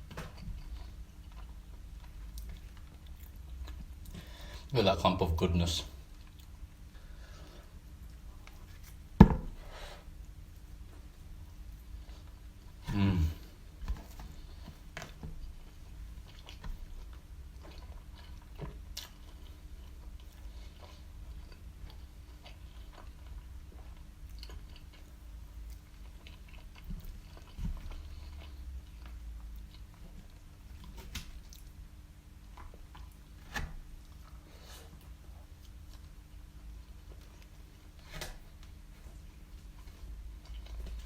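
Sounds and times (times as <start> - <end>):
chewing and biting food: 0.2 - 4.2, 14.3 - 31.8, 34.0 - 41.0.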